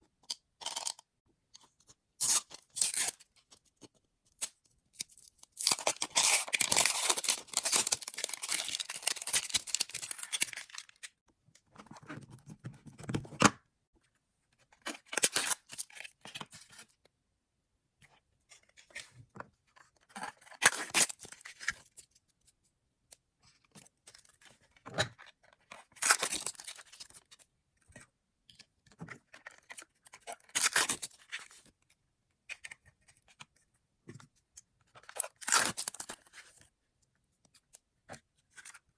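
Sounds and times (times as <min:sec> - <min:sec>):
plastic packaging crinkling and tearing: 0:05.0 - 0:11.1, 0:26.0 - 0:27.1, 0:35.2 - 0:36.2.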